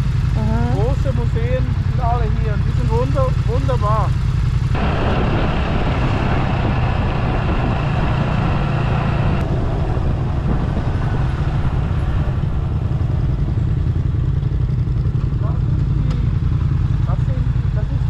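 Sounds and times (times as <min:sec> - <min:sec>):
motorcycle engine running: 0:00.0 - 0:18.0
road and wind noise: 0:00.0 - 0:18.0.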